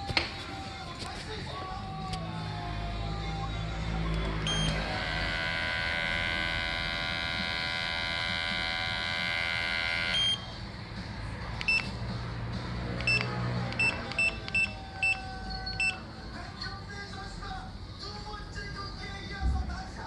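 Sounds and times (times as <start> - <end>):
short electronic beeps: 4.4 - 4.8, 10.2 - 10.5, 13.1 - 16.0
hair clipper buzzing: 4.5 - 10.2.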